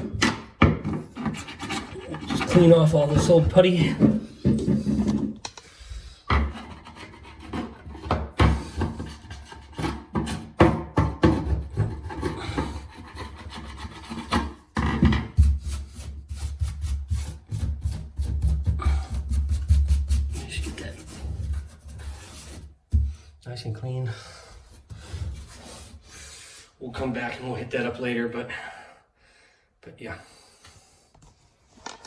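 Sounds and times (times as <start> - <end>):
scraping putty off a drain fitting: 0.0 - 5.7, 6.3 - 10.6, 11.2 - 23.3.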